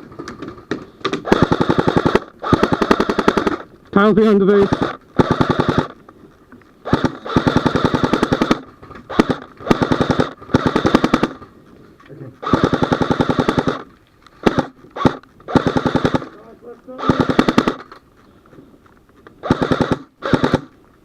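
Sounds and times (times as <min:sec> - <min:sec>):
airsoft rifle firing bursts: 0:01.1 - 0:06.0, 0:06.8 - 0:11.4, 0:12.4 - 0:17.9, 0:19.4 - 0:20.8.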